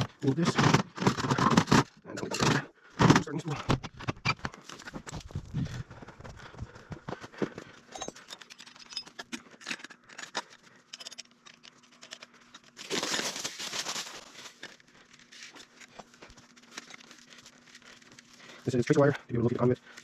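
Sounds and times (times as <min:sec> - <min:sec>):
cable rustling and clicking: 0:08.1 - 0:18.7.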